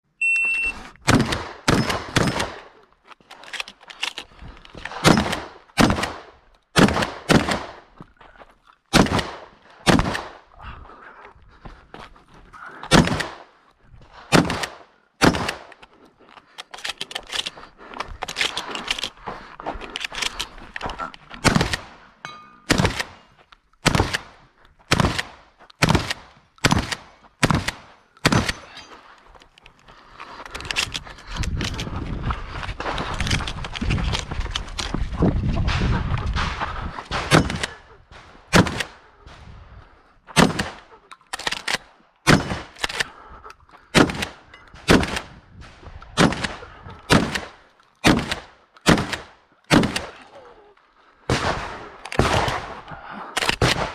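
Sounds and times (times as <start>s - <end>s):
shotgun shots: 1.0s - 2.7s, 4.9s - 7.8s, 8.9s - 10.4s, 12.9s - 13.5s, 14.2s - 15.7s, 21.4s - 22.0s, 22.7s - 23.2s, 23.8s - 28.7s, 35.7s - 39.0s, 40.4s - 40.9s, 42.3s - 42.8s, 43.9s - 50.2s, 51.3s - 53.9s.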